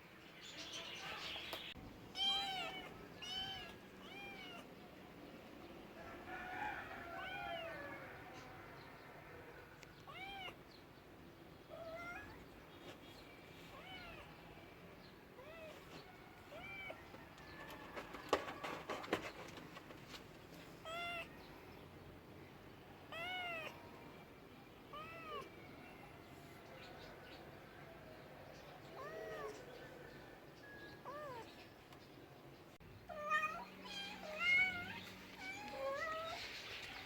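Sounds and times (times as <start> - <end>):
cat meowing: 2.1 - 4.7, 10.1 - 10.6, 11.7 - 12.4, 20.8 - 21.4, 23.1 - 23.8, 24.9 - 25.5, 29.0 - 29.6, 33.1 - 36.4.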